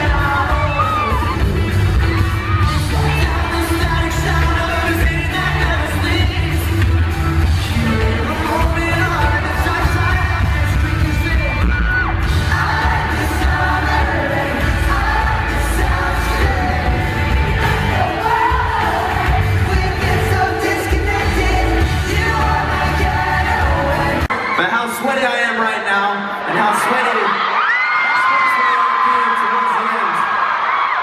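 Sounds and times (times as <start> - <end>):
person singing lead vocal: 0.0 - 24.6
pop-rock band playing live: 0.0 - 24.6.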